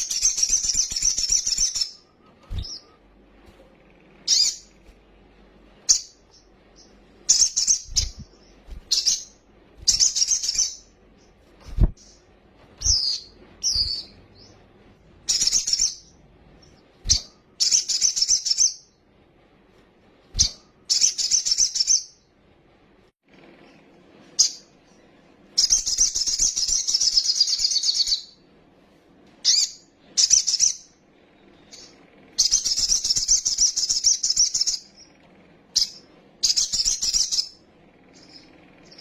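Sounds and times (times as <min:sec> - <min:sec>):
bird shrill rapid chirping: 0:00.0 - 0:03.0, 0:04.3 - 0:04.8, 0:05.9 - 0:11.0, 0:15.2 - 0:16.1, 0:17.1 - 0:18.9, 0:20.4 - 0:22.2, 0:31.7 - 0:34.9, 0:35.8 - 0:39.0.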